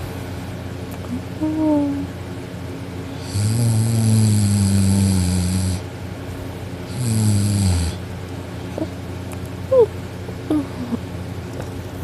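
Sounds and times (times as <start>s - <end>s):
person snoring loudly: 3.2s - 5.9s, 6.9s - 8.0s.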